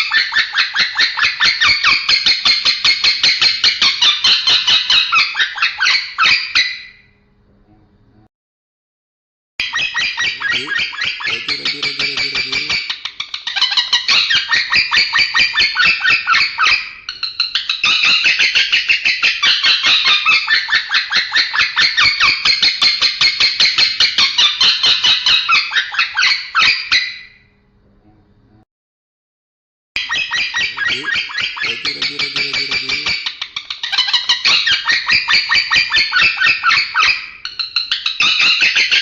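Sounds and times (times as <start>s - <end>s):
lovebird chattering: 9.6s - 22.3s, 30.0s - 39.0s.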